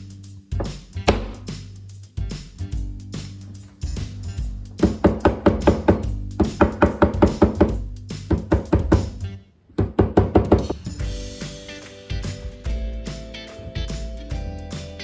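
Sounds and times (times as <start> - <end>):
background music with percussive notes: 0.0 - 9.3, 10.1 - 15.0.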